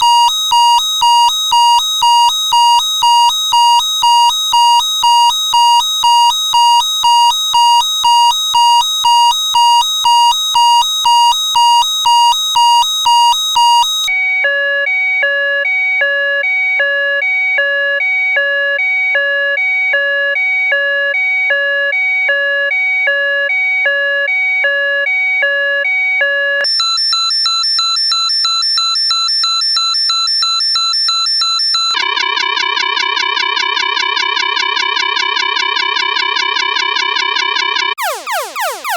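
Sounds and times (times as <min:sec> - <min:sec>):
steady high-pitched alarm tone: 0:00.0 - 0:14.3, 0:38.0 - 0:38.9
fast beeping alarm: 0:00.0 - 0:14.9, 0:38.0 - 0:38.9
two-tone alarm: 0:00.0 - 0:28.0, 0:36.5 - 0:38.9.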